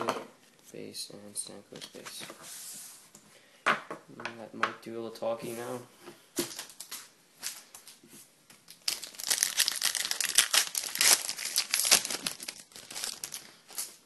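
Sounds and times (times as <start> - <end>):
wrapper tearing and crinkling: 8.7 - 14.0.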